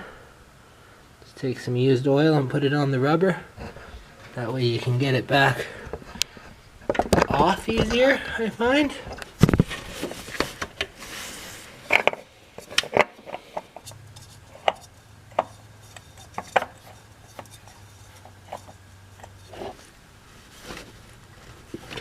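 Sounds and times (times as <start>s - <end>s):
clicks knocks and rubbing: 11.9s - 19.9s.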